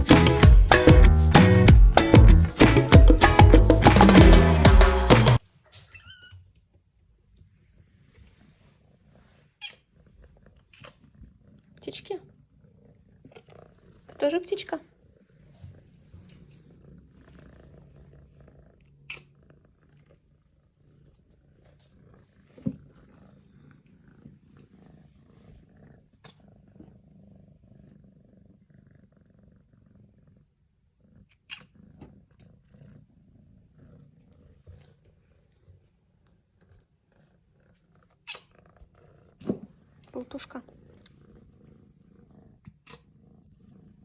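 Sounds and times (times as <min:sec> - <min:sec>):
cat purring: 0:07.2 - 0:44.0.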